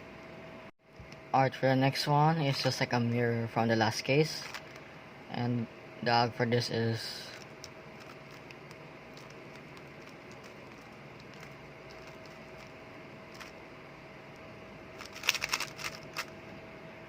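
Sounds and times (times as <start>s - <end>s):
faint hum: 0.0s - 17.0s
puzzle cube plastic clicks: 7.3s - 12.7s, 15.0s - 16.3s.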